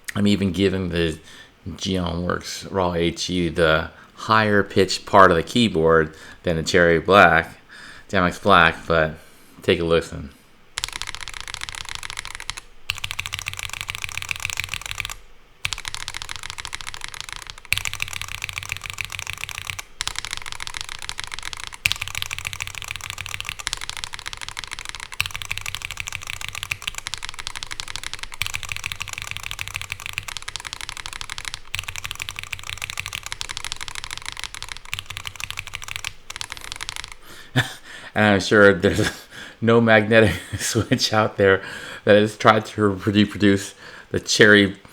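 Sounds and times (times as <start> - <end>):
rapid keyboard keypresses: 10.8 - 37.8.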